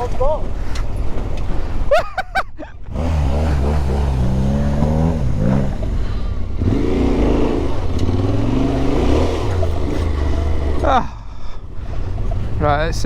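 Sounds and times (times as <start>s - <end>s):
motorcycle engine revving: 2.8s - 13.0s.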